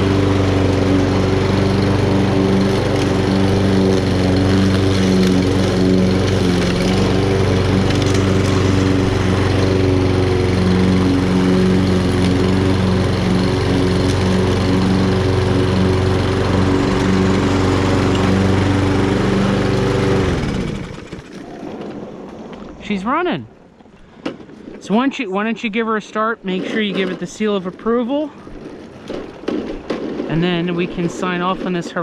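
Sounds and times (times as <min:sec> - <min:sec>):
push mower engine running: 0:00.0 - 0:21.9, 0:26.4 - 0:32.0.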